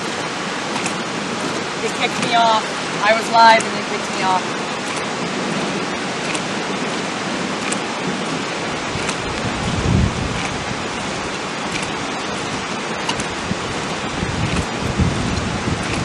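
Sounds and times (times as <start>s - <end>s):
rain hissing: 0.0s - 16.0s
low thunder rumble: 4.1s - 16.0s.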